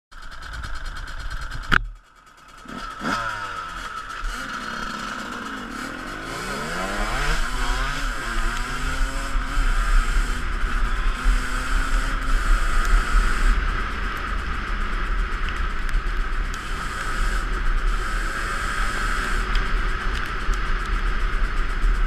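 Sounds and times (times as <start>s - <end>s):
dirt bike engine revving: 0.2s - 22.0s
sharp click: 1.5s - 2.0s.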